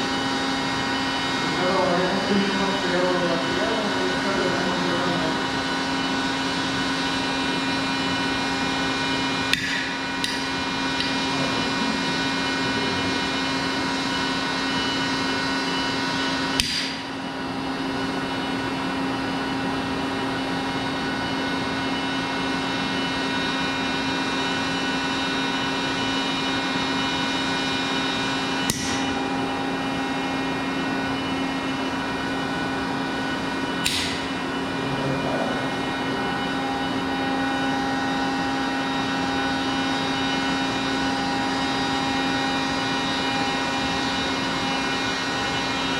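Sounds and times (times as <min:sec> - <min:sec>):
testing machine humming: 0:00.0 - 0:45.9
sharp snaps: 0:16.6 - 0:17.0.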